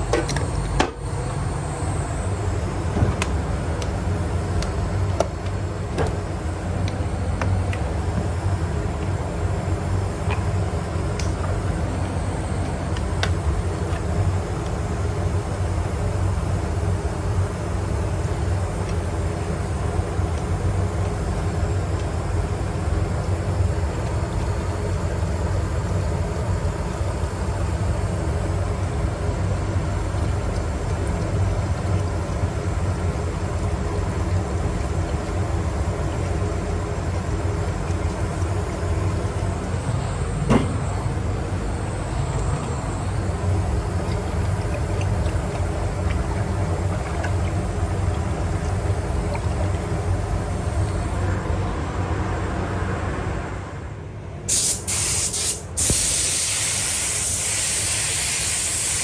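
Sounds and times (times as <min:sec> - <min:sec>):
machine running low rumble: 0:00.0 - 0:54.5
faint hum: 0:00.0 - 0:55.8.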